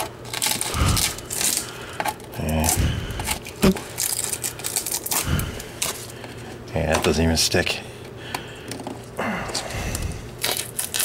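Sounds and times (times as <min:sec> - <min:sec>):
scraping and crackling undercoating: 0:00.0 - 0:07.1, 0:08.3 - 0:11.0.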